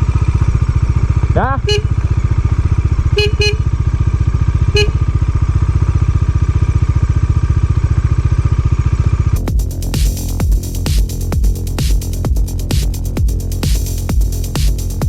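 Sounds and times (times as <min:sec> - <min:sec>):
motorcycle engine running: 0:00.0 - 0:15.0
short beeps: 0:03.2 - 0:03.6, 0:04.8 - 0:05.0.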